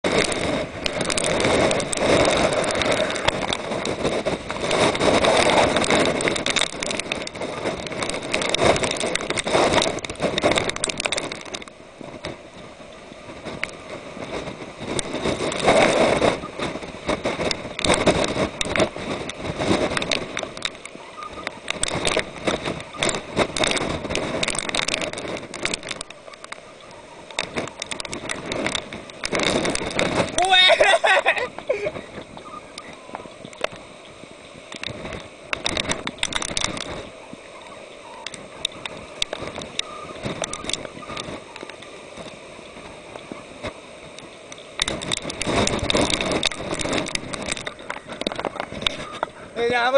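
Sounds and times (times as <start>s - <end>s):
small clicks and knocks: 0.0s - 49.8s
storm wind and rain rushing: 0.0s - 49.9s.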